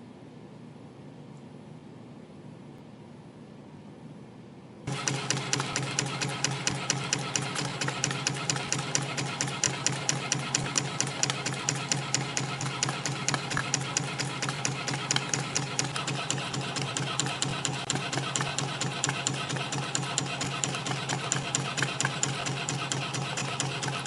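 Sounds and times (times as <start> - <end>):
machine low hum: 0.0 - 24.0
fast even clicking: 4.9 - 24.0.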